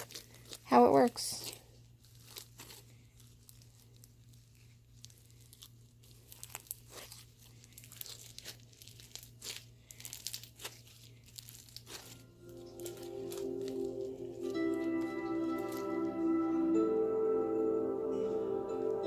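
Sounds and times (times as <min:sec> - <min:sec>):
slime crackling and popping: 0:00.0 - 0:15.9
music: 0:11.9 - 0:19.0.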